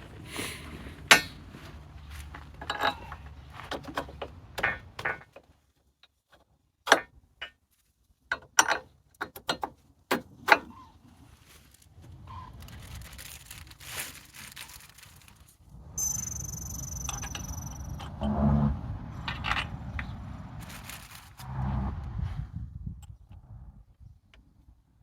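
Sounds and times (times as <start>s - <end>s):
hand tools clicking and tapping: 1.0s - 1.4s, 16.0s - 18.2s.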